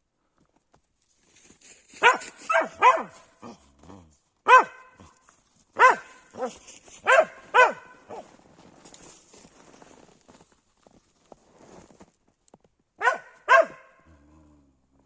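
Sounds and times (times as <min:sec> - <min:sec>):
dog barking: 0:02.0 - 0:03.6, 0:04.4 - 0:05.2, 0:05.8 - 0:08.3, 0:13.0 - 0:14.1.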